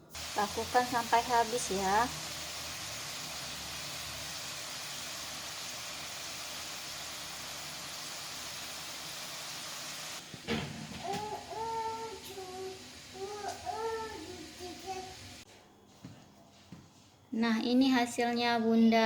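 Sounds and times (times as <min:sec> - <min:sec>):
noodles deep-frying in oil: 0:00.0 - 0:15.4
child singing: 0:11.0 - 0:15.4.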